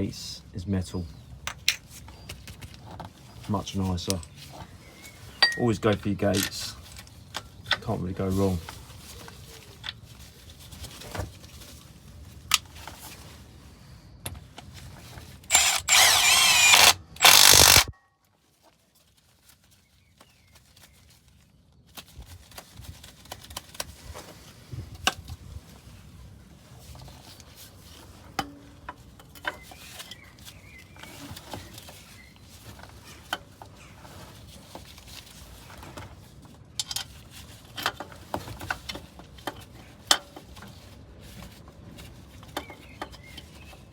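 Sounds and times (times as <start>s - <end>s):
power tool running: 15.5s - 17.9s.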